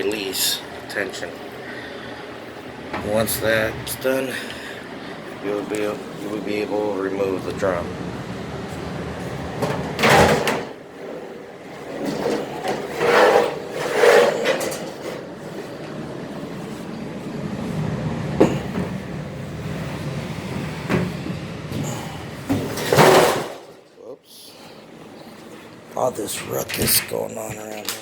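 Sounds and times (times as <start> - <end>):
metal drum scraping and clanking: 2.9 - 23.7.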